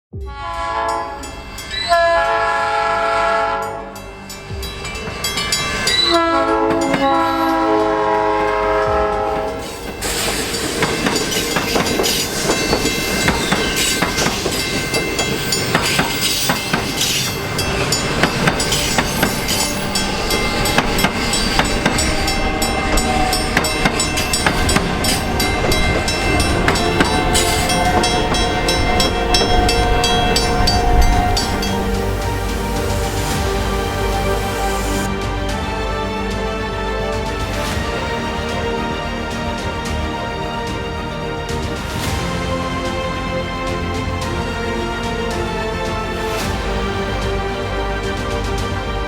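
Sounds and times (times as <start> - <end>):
train horn blasts: 0.2 - 49.0
train passing rumble: 0.2 - 49.0
wheels clattering over rails: 9.0 - 33.0.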